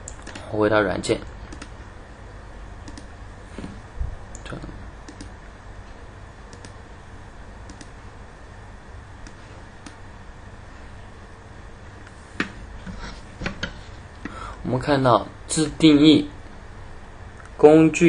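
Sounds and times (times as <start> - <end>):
computer mouse clicks: 0.0 - 0.5, 1.5 - 1.8, 2.8 - 3.1, 5.1 - 5.4, 6.5 - 6.8, 7.6 - 8.0, 9.2 - 10.0
low hum: 0.0 - 18.0
microphone hiss: 0.0 - 18.0.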